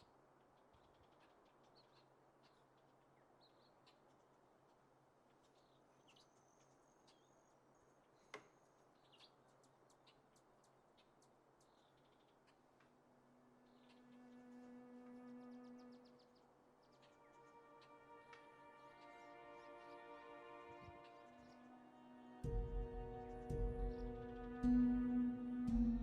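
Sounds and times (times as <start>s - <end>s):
soft high chirps and ticks: 0.0s - 19.9s.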